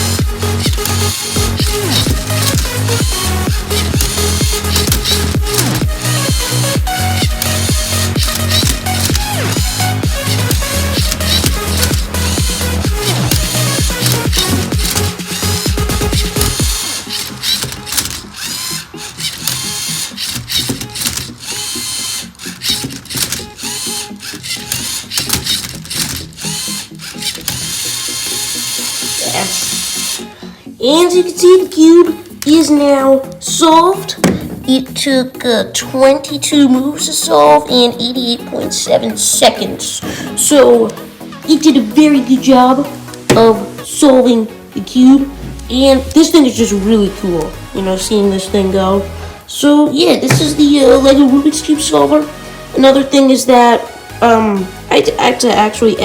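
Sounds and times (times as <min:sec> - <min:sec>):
electronic dance music: 0:00.0 - 0:21.5
electric motors whirring: 0:00.0 - 0:35.2, 0:35.9 - 0:56.0
plastic clicks and clacks: 0:00.6 - 0:06.5, 0:07.2 - 0:30.2.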